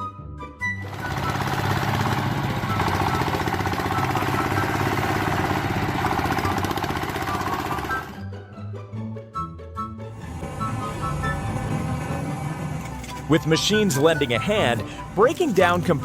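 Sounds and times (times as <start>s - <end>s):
machine rattling loudly: 0.9s - 8.2s
faint background music: 10.1s - 16.0s.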